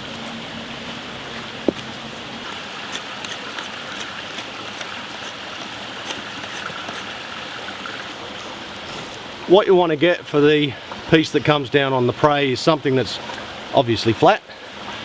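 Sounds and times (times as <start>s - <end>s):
stream water rushing: 0.0s - 15.0s.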